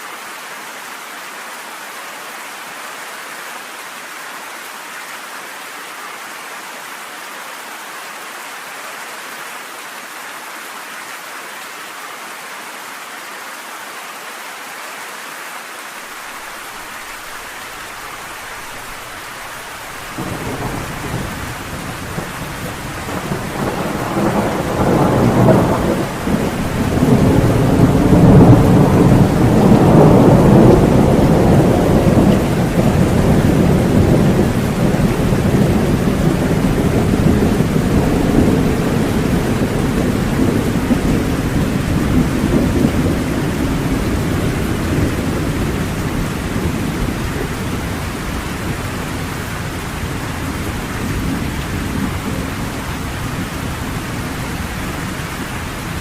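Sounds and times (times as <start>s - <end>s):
steady rain: 0.0s - 56.0s
rolling thunder: 18.5s - 56.0s.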